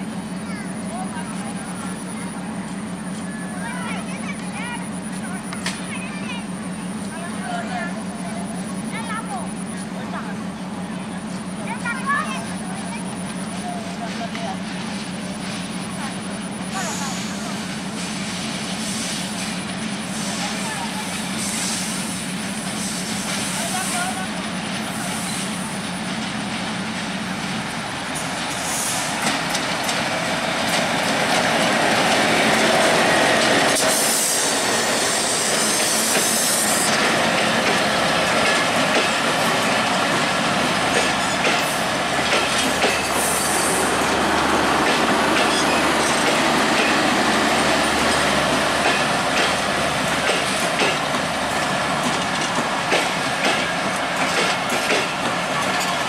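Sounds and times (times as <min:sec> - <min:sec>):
train coaches rumbling past: 0:00.0 - 0:56.0
train wheels screeching: 0:16.7 - 0:26.0, 0:28.1 - 0:56.0
wheels clacking over rail joints: 0:26.2 - 0:56.0.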